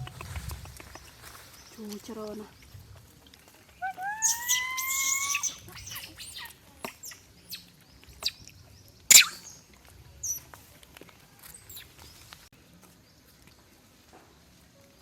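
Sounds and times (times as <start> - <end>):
clicks and rustles of branches: 0.0 - 4.2, 9.6 - 15.0.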